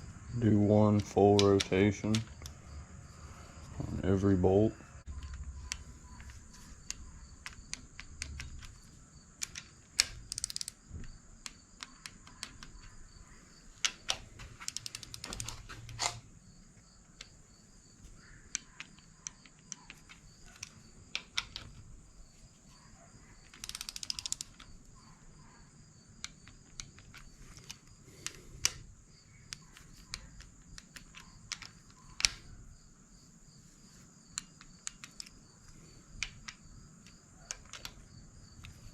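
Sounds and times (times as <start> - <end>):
metallic clicks and taps: 1.0 - 2.6, 5.1 - 13.1, 13.8 - 16.2, 18.5 - 21.8, 23.4 - 25.2, 26.2 - 28.9, 29.5 - 32.5, 34.3 - 38.9
ratchet wrench clicking: 9.4 - 10.8, 13.8 - 16.2, 23.5 - 24.7.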